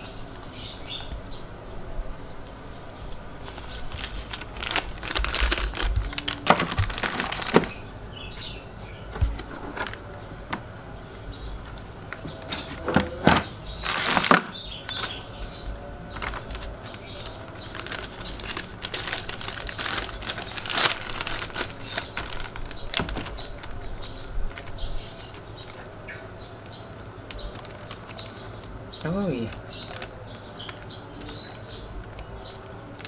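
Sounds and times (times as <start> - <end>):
objects clicking and knocking: 3.1 - 8.5, 11.7 - 15.2, 16.1 - 23.7.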